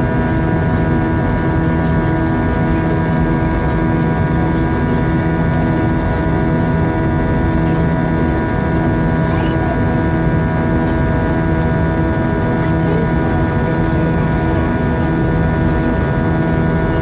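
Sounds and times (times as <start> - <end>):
airplane cabin air and engine noise: 0.0 - 17.0.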